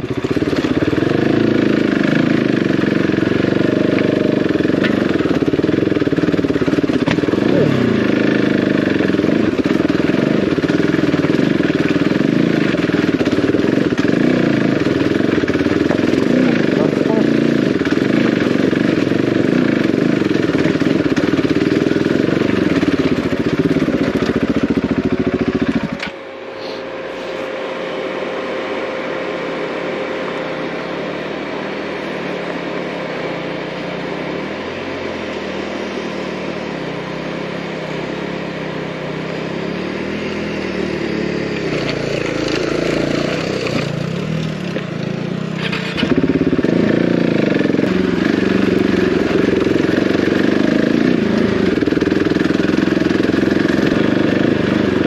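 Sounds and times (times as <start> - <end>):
motorcycle engine: 0.0 - 55.0.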